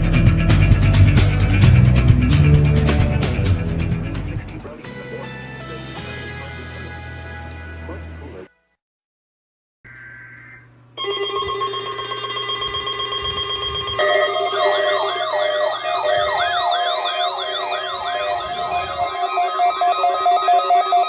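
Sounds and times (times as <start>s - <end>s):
warbling siren tone: 12.7s - 21.0s
electronic beeping tones: 13.2s - 21.0s.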